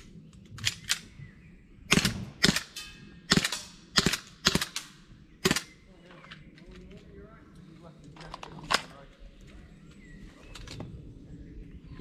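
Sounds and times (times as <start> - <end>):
airsoft gun shots cracking: 1.9 - 5.8.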